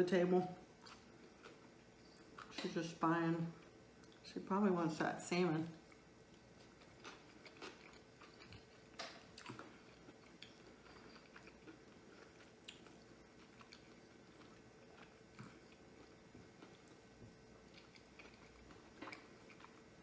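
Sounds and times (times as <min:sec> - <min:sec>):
person chewing: 0:00.8 - 0:02.6, 0:05.9 - 0:20.0.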